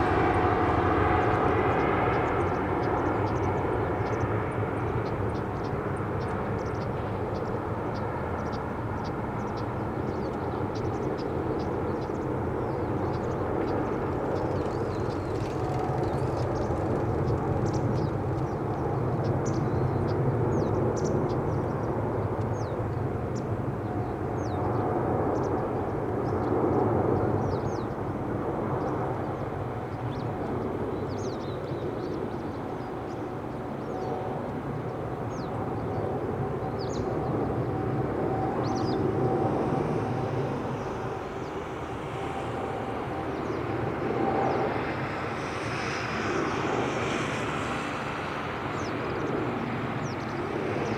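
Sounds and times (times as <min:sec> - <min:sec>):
jet engines running: 0:00.0 - 0:50.9
small birds chirping: 0:01.8 - 0:22.8, 0:34.9 - 0:50.9.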